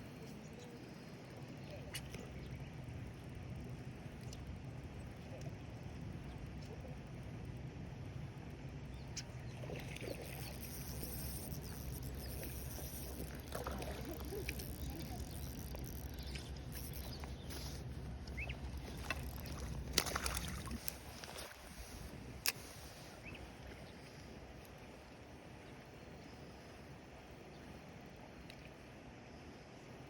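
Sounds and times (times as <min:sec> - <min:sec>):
steady low rumble: 0:00.0 - 0:29.5
small ticks: 0:10.0 - 0:21.6.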